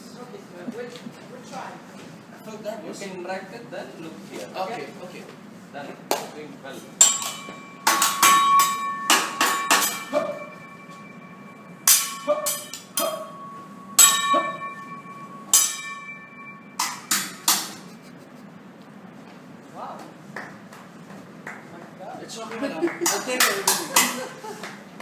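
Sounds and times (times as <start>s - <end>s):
metal utensils clanging: 7.0s - 18.0s.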